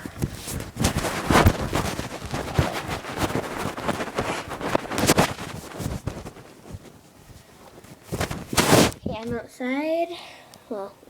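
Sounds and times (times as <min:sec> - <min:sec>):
microphone handling rustle: 0:00.0 - 0:09.5
microphone bump: 0:07.8 - 0:09.4.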